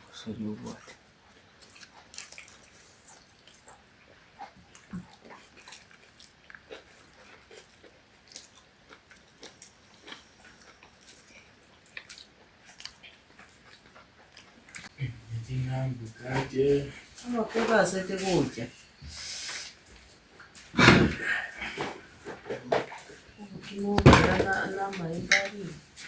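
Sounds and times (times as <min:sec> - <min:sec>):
food being chewed: 0:00.6 - 0:15.0.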